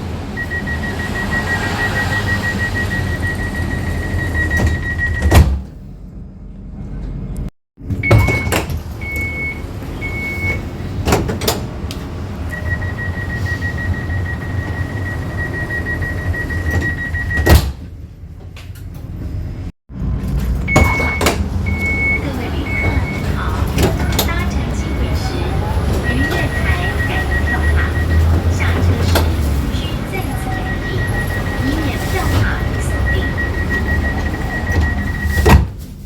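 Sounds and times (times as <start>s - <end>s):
tram rumble: 0.0s - 36.0s
fast door warning beeps: 0.4s - 5.5s, 8.0s - 10.7s, 12.5s - 17.6s, 20.7s - 35.6s
sliding doors thudding shut: 10.5s - 12.1s, 31.4s - 35.9s.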